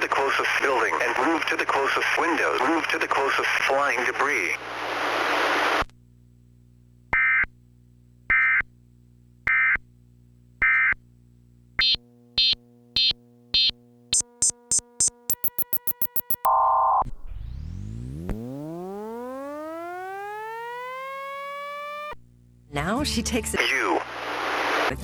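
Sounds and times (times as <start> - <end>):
electronic beeps rising in pitch: 11.8 - 22.2
faint low drone: 16.5 - 22.2.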